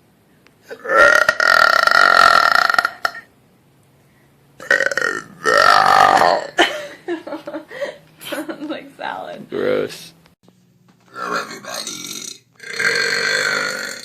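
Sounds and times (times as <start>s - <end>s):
woman belching loudly: 0.7s - 3.3s, 4.6s - 6.6s, 11.8s - 14.0s.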